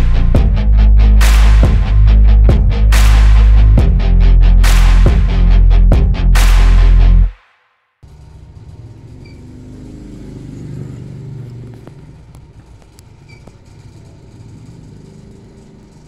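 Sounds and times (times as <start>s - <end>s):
vehicle engine rumble: 8.0s - 16.0s.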